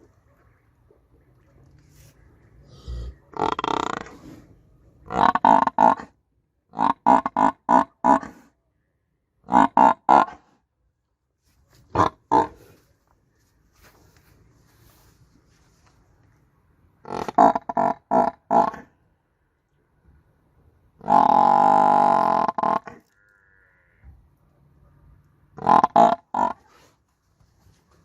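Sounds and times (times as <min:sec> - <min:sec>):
buffalo grunts: 0:02.6 - 0:06.1.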